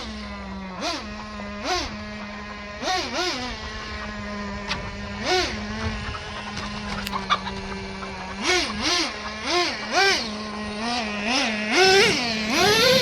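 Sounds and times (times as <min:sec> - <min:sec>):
toy truck electric motor whining: 0:00.0 - 0:13.0
chickens squawking: 0:05.2 - 0:13.0.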